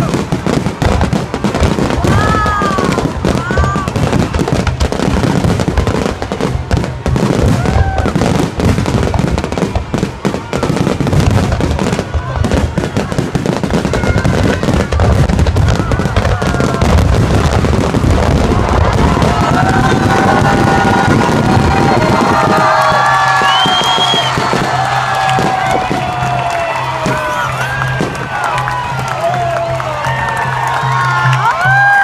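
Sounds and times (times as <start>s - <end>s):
fireworks bangs and crackles: 0.0s - 32.0s
firework whistles: 18.6s - 26.2s.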